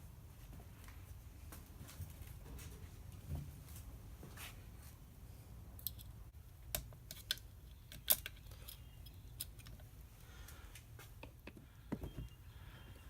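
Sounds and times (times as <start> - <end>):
metallic clicks of small metal parts: 5.8 - 9.9.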